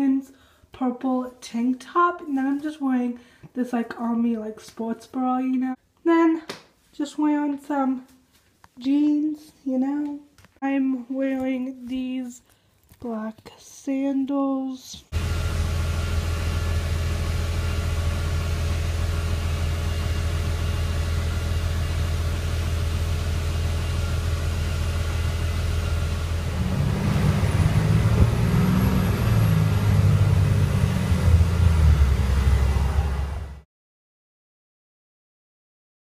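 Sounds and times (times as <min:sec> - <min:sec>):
vehicle engine running: 0:15.2 - 0:33.6.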